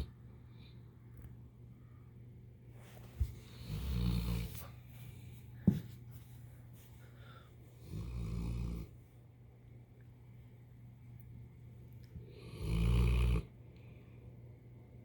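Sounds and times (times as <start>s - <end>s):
steady low hum: 0.0s - 15.0s
person snoring: 12.3s - 13.5s.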